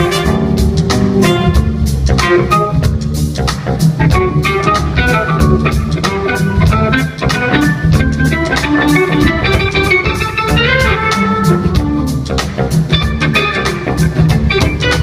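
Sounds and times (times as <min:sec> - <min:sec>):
funk rock band playing: 0:00.0 - 0:15.0.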